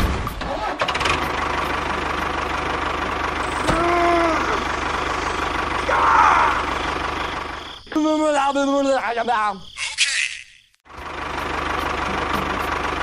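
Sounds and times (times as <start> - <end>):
small engine idling with knocking: 0.7 - 5.9, 6.6 - 7.7, 10.9 - 13.0.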